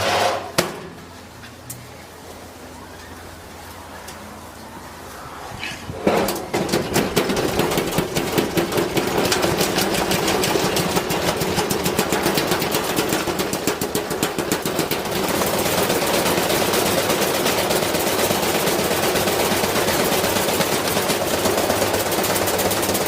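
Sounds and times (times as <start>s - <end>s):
metal tools rattling in washing machine: 6.0s - 23.0s.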